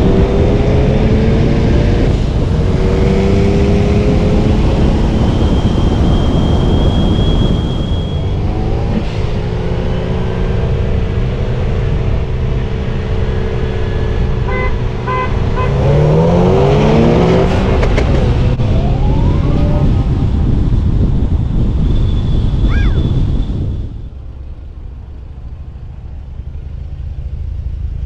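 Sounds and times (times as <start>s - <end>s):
car engine accelerating: 0.0s - 22.0s
wind and road rumble: 0.0s - 28.0s.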